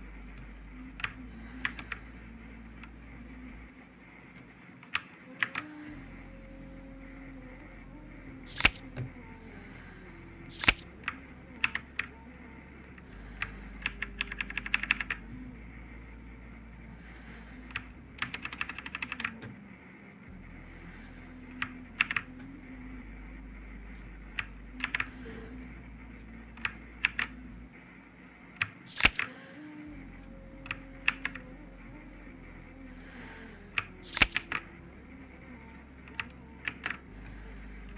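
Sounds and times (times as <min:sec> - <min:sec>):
faint low hum: 0:00.0 - 0:37.9
mechanical keyboard keystrokes: 0:08.5 - 0:08.8, 0:10.5 - 0:10.9, 0:28.6 - 0:29.3, 0:34.0 - 0:34.6.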